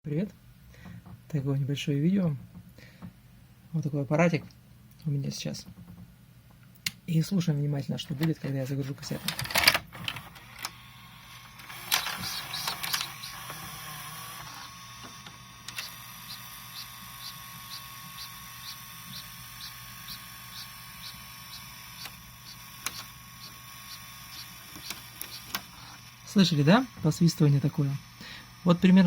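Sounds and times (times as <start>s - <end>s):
brief motor tone: 10.7s - 28.8s.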